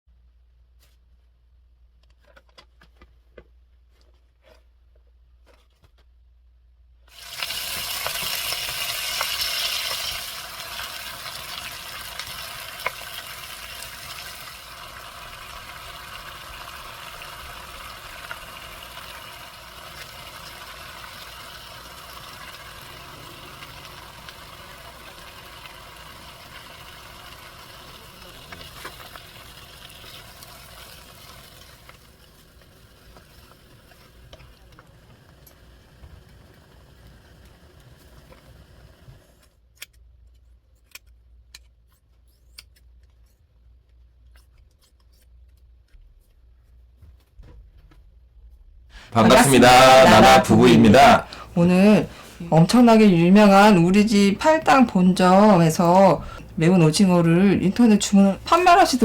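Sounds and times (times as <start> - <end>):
food sizzling in frying pan: 7.1 - 34.9.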